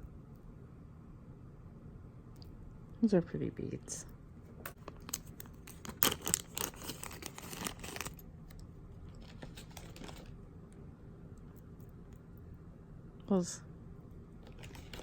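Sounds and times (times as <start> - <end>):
plastic bag rustling: 4.7 - 8.2, 9.0 - 10.4, 14.4 - 15.0.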